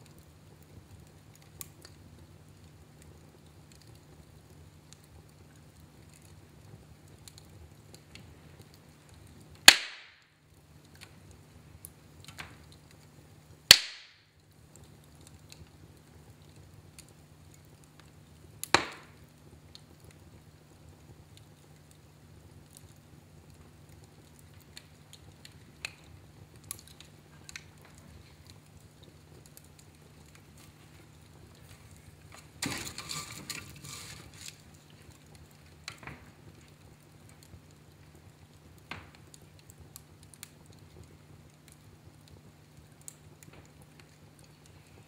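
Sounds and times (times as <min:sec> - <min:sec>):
fire crackling in a fireplace: 0:00.0 - 0:45.0.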